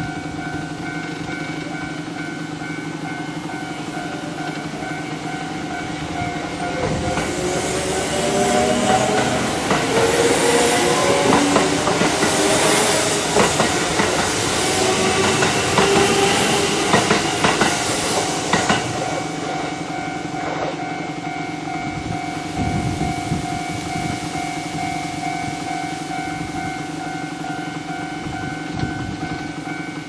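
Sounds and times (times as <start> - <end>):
level crossing alarm bell: 0.0 - 30.0
train wheel noise: 0.0 - 30.0
train motor whine: 3.1 - 19.8.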